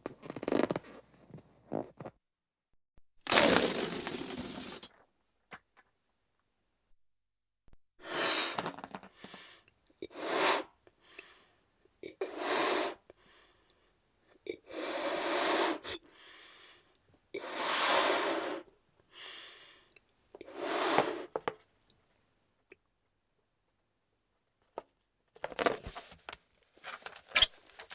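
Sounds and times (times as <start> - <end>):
balloon inflating air puffs: 3.3 - 4.9, 8.0 - 8.8, 10.1 - 10.8, 20.5 - 21.4.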